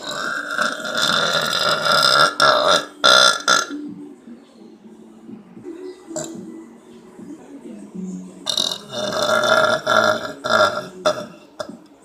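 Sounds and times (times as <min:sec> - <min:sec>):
person burping: 0:00.0 - 0:03.8, 0:08.5 - 0:11.8.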